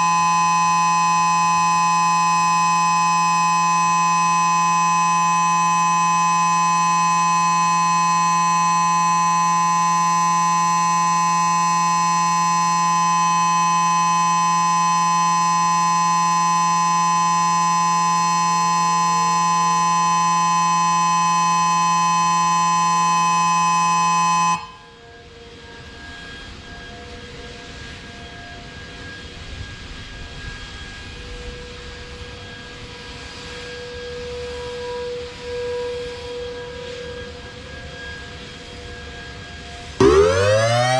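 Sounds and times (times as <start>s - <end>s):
steady siren alert tone: 0.0s - 25.2s, 39.8s - 40.9s
distant rising warning siren: 0.0s - 40.9s.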